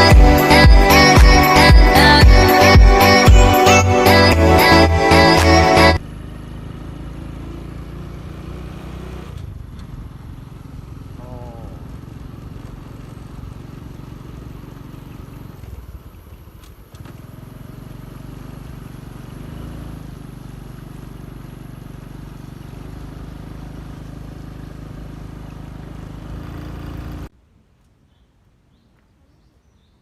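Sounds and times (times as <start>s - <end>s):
vehicle engine and road noise: 0.0s - 29.2s.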